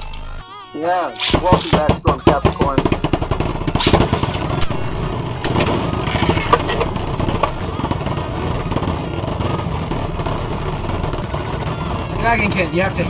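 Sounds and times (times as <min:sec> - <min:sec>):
spinning tops clashing: 0:00.0 - 0:00.4, 0:01.2 - 0:07.7
spinning tops whirring: 0:00.0 - 0:00.4, 0:01.2 - 0:09.1.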